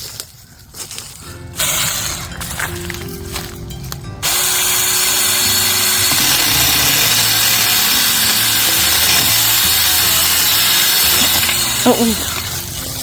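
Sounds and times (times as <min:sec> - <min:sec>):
chain cutting bamboo: 0:03.9 - 0:13.0
mini chainsaw running: 0:04.2 - 0:13.0.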